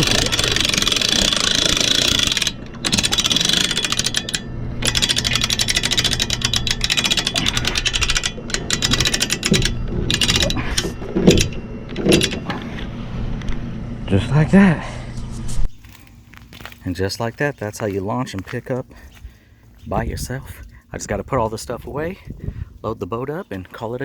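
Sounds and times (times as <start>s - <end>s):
winch ratcheting clicks: 0.0s - 12.5s.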